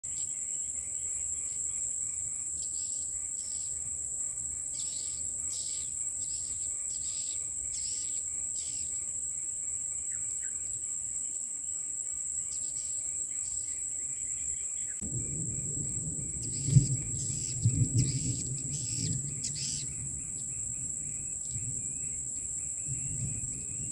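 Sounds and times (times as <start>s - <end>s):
shrill insect drone: 0.1s - 23.9s.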